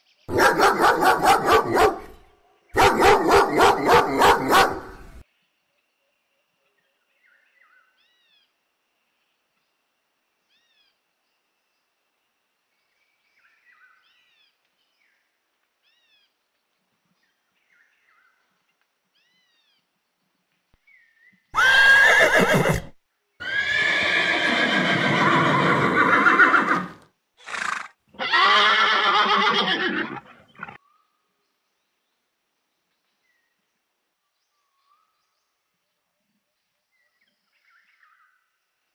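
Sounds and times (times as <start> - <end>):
horse whinnying: 21.6 - 30.8.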